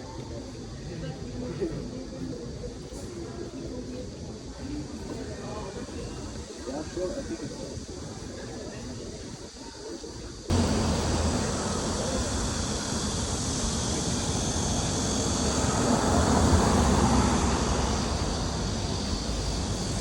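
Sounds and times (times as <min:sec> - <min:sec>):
moving vehicle rushing noise: 0:10.5 - 0:20.0.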